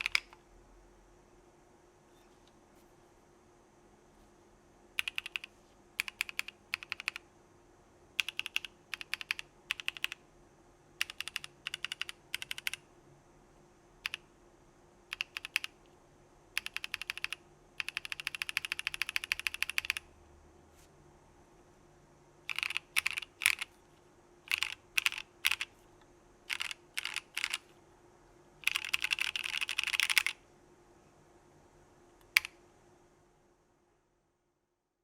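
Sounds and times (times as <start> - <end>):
mechanical keyboard typing: 0.0 - 0.4, 5.0 - 7.2, 8.2 - 10.2, 11.0 - 12.8, 14.0 - 14.3, 15.1 - 15.9, 16.5 - 20.1, 22.4 - 23.8, 24.5 - 25.8, 26.4 - 27.8, 28.6 - 30.4, 32.2 - 32.6.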